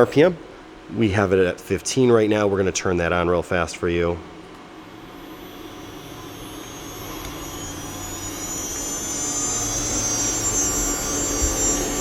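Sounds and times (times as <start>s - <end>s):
router spindle whine: 4.8s - 12.0s.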